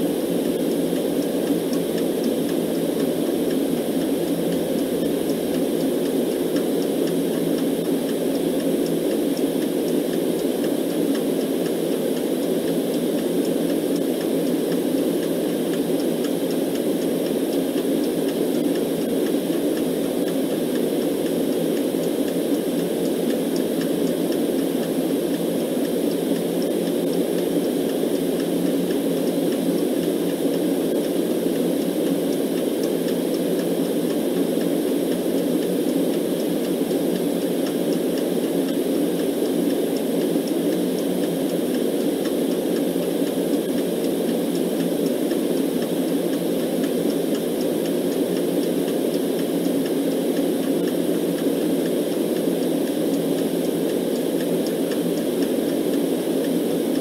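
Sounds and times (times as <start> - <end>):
faint clock ticking: 0.0 - 57.0
white noise rush: 0.0 - 57.0.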